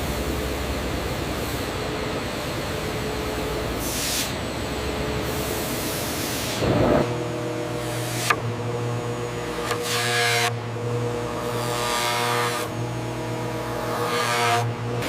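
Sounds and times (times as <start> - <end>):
faint machinery hum: 0.0 - 15.0
sawmill machinery hiss: 3.4 - 4.4, 5.2 - 7.1.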